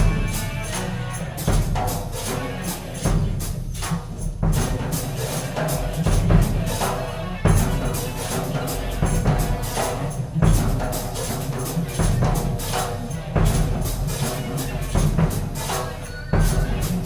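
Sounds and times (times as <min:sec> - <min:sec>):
experimental ensemble music: 0:00.0 - 0:17.0
knocks and strikes: 0:00.0 - 0:17.0
low bass layer: 0:00.0 - 0:17.0.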